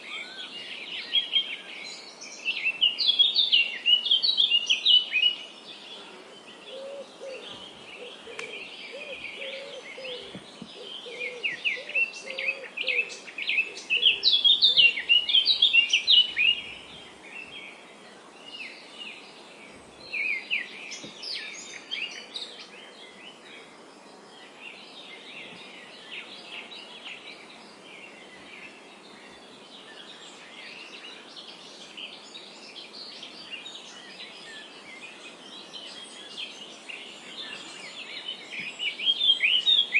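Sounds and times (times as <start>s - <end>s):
background hiss: 0.0s - 39.9s
birds chirping and singing: 0.0s - 39.9s
low repeated bird call: 6.0s - 16.9s.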